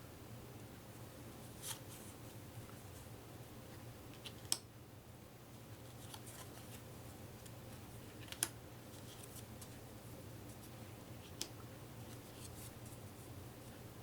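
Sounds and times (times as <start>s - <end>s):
playing cards rustling: 5.8s - 9.8s.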